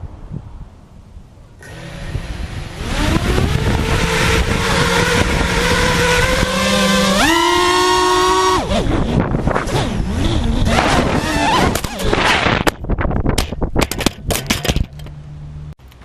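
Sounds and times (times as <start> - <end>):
strong wind: 0.0 - 15.0
drone motors whining: 1.6 - 12.7
propellers clicking and knocking: 1.6 - 15.2.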